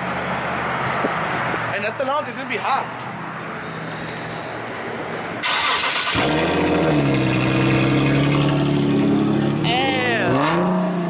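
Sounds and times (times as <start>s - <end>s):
starter cranking engine: 5.4s - 6.7s
car engine idling: 5.4s - 10.3s.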